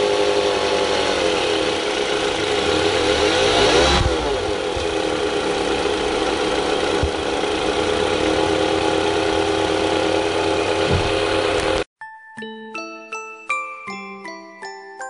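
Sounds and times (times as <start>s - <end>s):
car engine idling: 0.0s - 11.9s
tinkling chime music: 12.0s - 15.0s.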